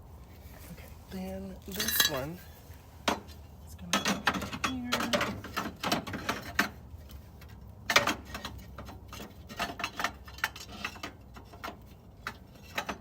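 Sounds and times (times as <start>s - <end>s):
light metallic clicks and clinks: 1.7s - 2.4s.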